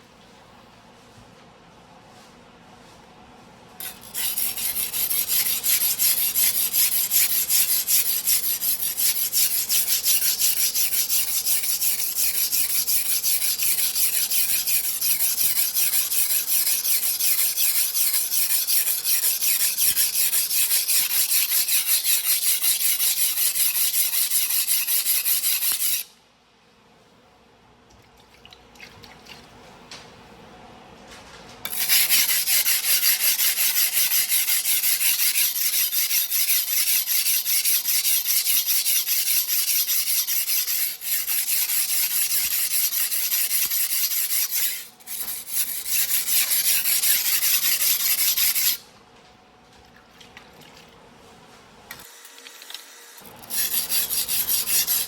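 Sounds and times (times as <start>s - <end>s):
knife scraping on whetstone: 3.8s - 26.1s, 31.7s - 48.8s, 53.2s - 55.0s.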